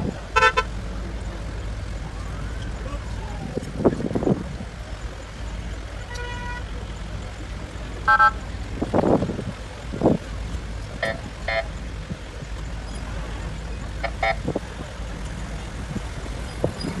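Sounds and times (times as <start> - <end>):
low outdoor rumble: 0.0 - 17.0
vehicle horns tooting: 0.3 - 0.8, 5.9 - 6.8, 8.0 - 8.5, 11.0 - 11.9, 13.9 - 14.6.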